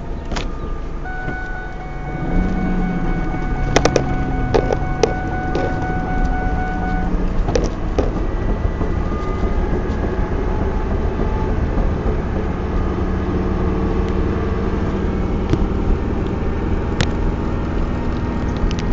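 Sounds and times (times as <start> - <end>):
car road and drivetrain noise: 0.0 - 18.9
rear end thumping and popping: 0.2 - 12.6.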